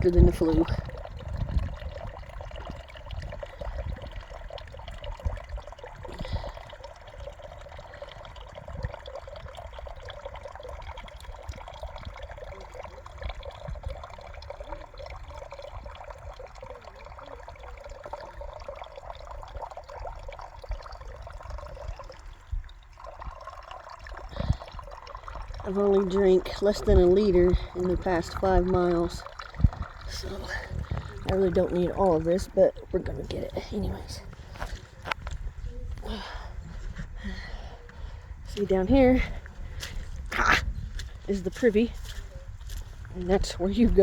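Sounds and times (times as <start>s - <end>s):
water pouring into container: 0.0s - 44.0s.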